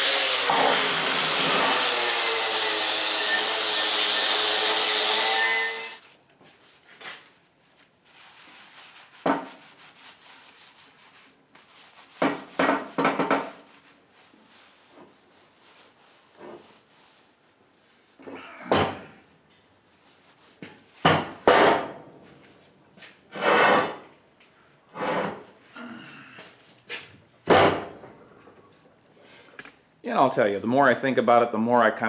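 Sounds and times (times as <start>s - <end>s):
reciprocating saw cutting wood: 0.0s - 6.0s.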